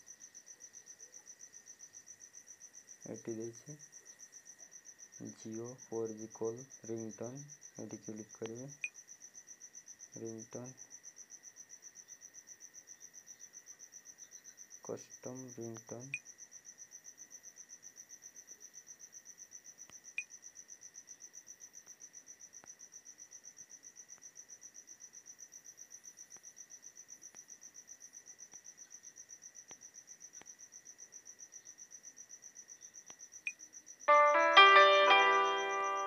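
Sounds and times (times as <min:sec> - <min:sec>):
cricket chirping: 0:00.0 - 0:36.0
phone ringtone: 0:34.1 - 0:36.0.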